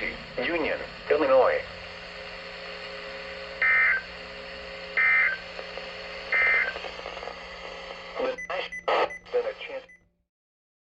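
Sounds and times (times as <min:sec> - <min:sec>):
radio hiss: 0:00.0 - 0:09.9
digital data tone bursts: 0:06.3 - 0:06.8, 0:08.2 - 0:10.0.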